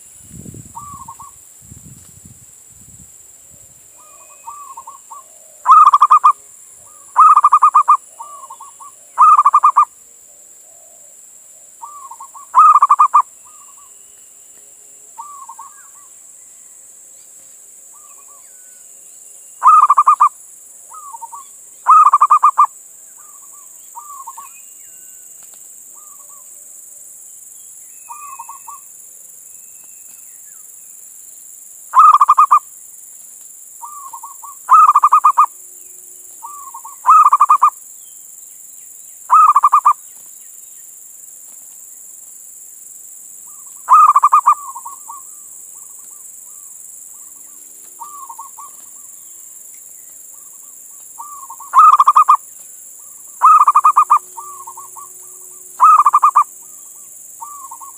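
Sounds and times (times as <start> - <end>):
steady high hiss: 0.0 - 57.9
dove cooing: 4.0 - 13.8, 19.6 - 20.3, 20.9 - 24.5, 32.0 - 32.6, 33.8 - 35.6, 36.4 - 37.7, 39.3 - 40.0, 43.6 - 46.7, 48.0 - 49.1, 51.2 - 52.4, 53.4 - 57.9.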